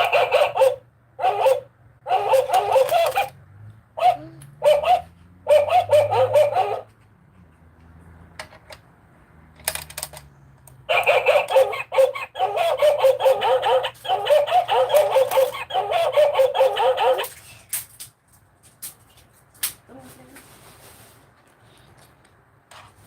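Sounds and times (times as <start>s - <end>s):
toy playing cartoon animal sounds: 0.0s - 3.4s, 10.9s - 17.3s
toy clicks: 2.2s - 3.4s, 9.5s - 17.9s.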